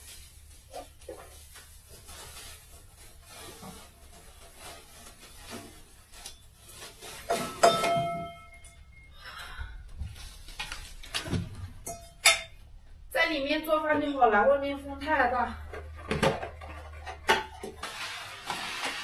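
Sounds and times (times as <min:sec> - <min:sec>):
cookware rustling and scraping: 0:00.0 - 0:08.7, 0:10.2 - 0:12.7, 0:15.2 - 0:19.0.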